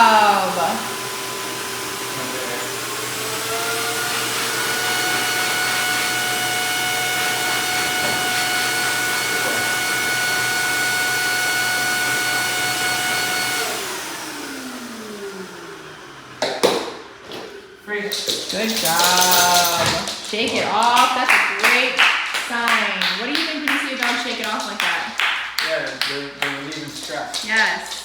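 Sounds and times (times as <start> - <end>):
blow dryer motor whining: 0.0 - 17.9.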